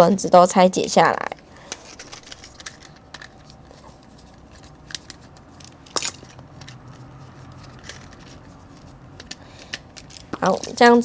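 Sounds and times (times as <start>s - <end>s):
plastic toy parts clicking: 1.6s - 10.9s.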